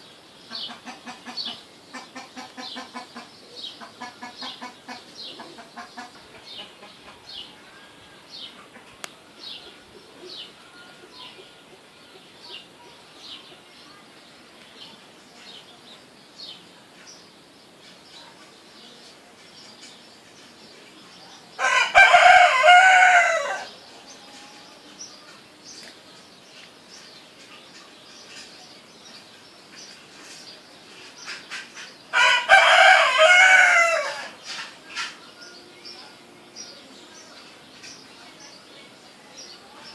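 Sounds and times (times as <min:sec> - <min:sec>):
small birds chirping: 0:00.0 - 0:39.9
rooster crowing: 0:21.6 - 0:23.8, 0:32.1 - 0:34.4.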